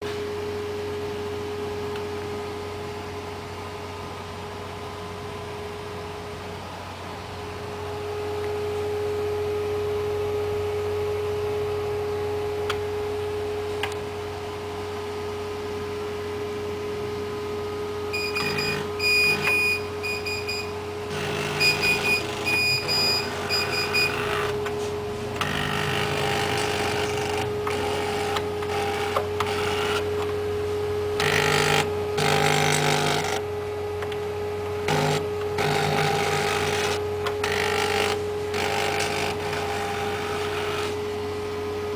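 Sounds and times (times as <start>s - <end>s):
stepper motor whining: 18.1s - 30.3s, 34.8s - 41.0s.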